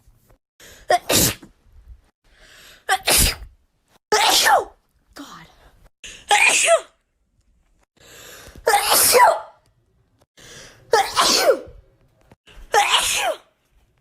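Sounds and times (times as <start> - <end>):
person sneezing: 0.9 - 1.5, 2.9 - 3.5, 6.2 - 6.9, 8.6 - 9.5, 10.9 - 11.8, 12.7 - 13.5.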